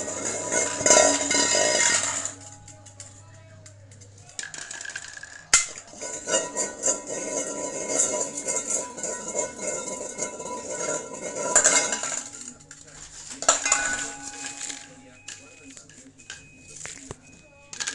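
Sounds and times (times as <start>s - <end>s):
pressure cooker rattling: 0.0s - 12.8s
metallic ringing: 0.0s - 16.8s.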